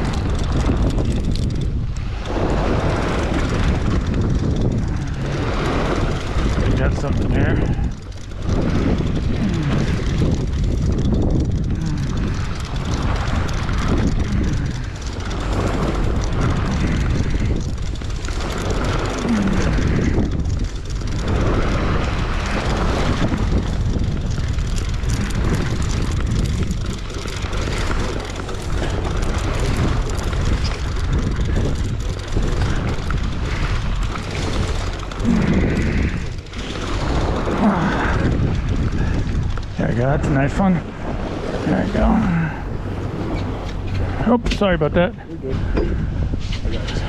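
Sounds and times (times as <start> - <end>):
boat engine low rumble: 0.0 - 47.0
rushing water: 32.6 - 45.8.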